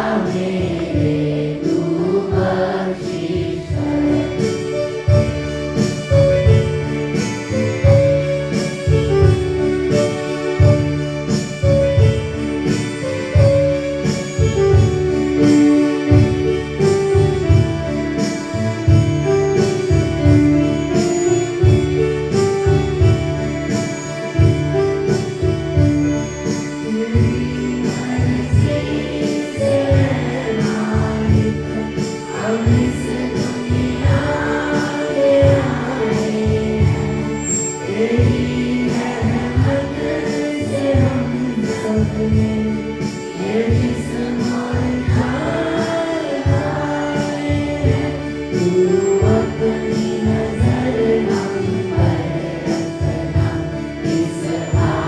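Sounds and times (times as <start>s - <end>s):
people singing: 0.0s - 5.2s, 26.7s - 55.0s
instrumental music with steady beat: 0.0s - 55.0s.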